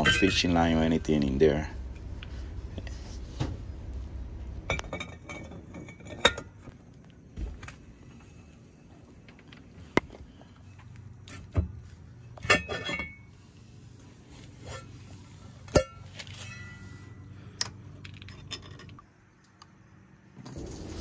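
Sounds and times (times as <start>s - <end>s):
metal tools clinking: 0.0s - 1.0s, 15.6s - 19.0s.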